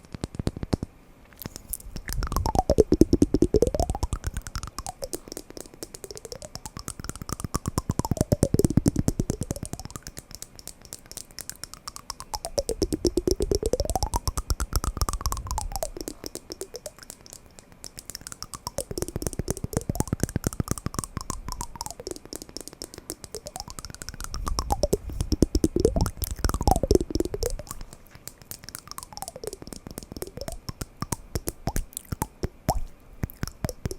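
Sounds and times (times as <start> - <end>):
wooden blocks knocking: 2.1 - 33.9.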